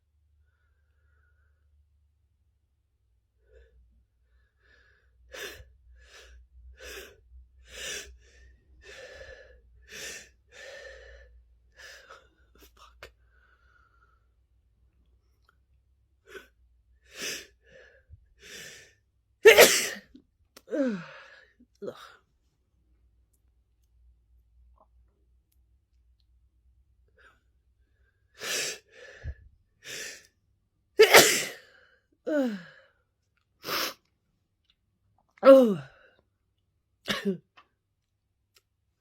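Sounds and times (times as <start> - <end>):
person sneezing: 19.4 - 20.1, 31.0 - 31.6, 37.1 - 37.4.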